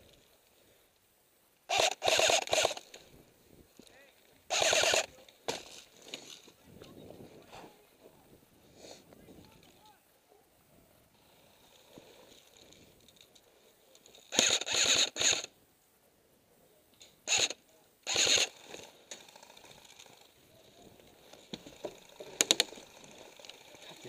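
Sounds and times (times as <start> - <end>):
airsoft guns firing in bursts: 1.7 - 2.9, 4.5 - 5.1, 14.3 - 15.5, 17.3 - 18.6.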